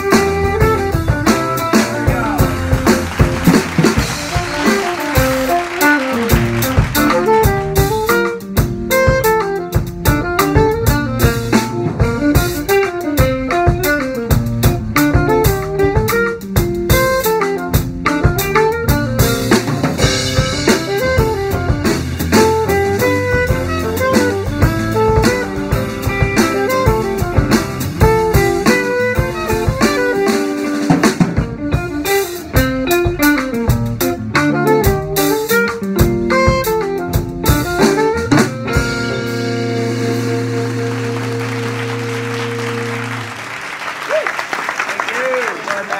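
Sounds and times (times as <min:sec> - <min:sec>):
jazz guitar lines: 0:00.0 - 0:43.8
busy drum kit: 0:00.0 - 0:45.9.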